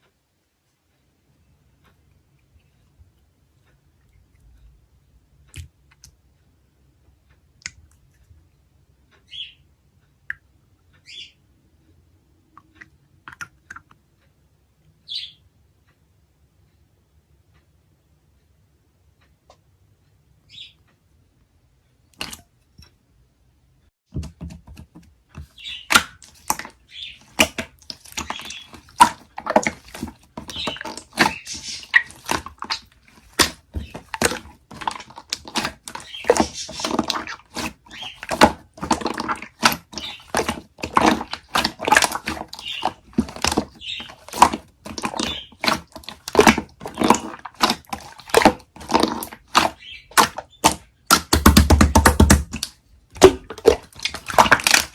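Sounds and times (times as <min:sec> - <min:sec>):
slime clicking and popping: 0:25.5 - 0:54.9.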